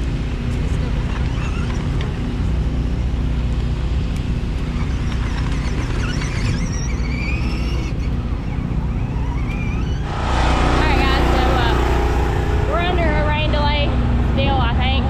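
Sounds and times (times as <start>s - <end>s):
vehicle engines running: 10.0s - 15.0s.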